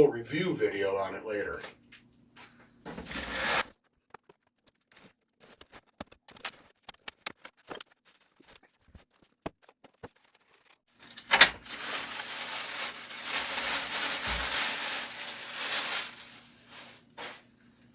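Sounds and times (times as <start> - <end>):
packing tape ripping: 3.0 - 3.7, 9.9 - 16.5.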